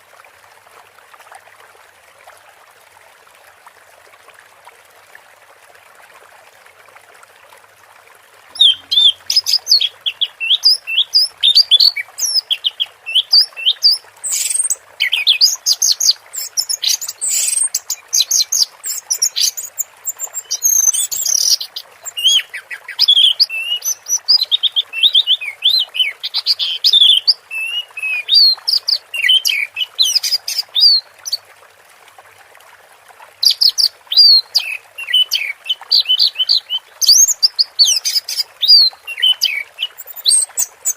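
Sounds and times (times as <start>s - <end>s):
running water hiss: 6.8s - 32.1s, 32.7s - 40.9s
bird singing whistled notes: 8.6s - 25.8s.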